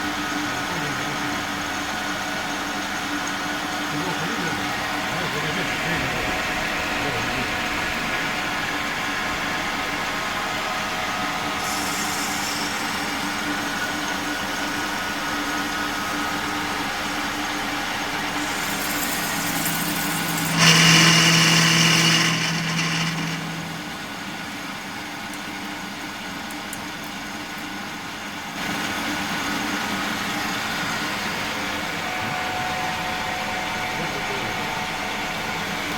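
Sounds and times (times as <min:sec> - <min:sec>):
lathe running with mechanical hum: 0:00.0 - 0:35.9
high whine: 0:04.0 - 0:15.8, 0:17.5 - 0:25.2.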